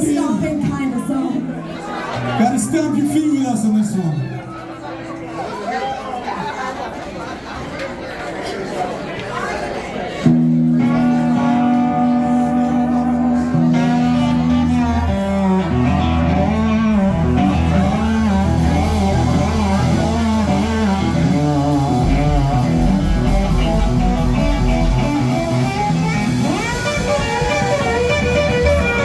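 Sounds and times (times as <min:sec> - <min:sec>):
electric guitar lines bending: 0:10.3 - 0:29.0
steady bass: 0:10.7 - 0:29.0.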